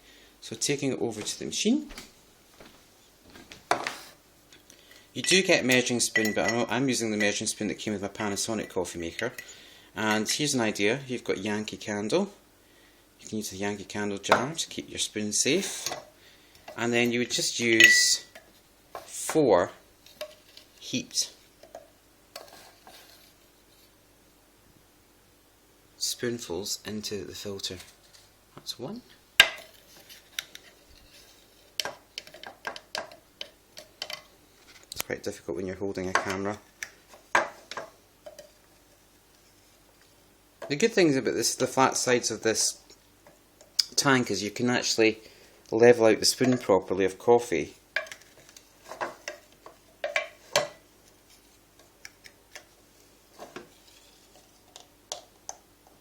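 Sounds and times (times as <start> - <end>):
spoon tapping and scraping container: 17.8 - 19.1.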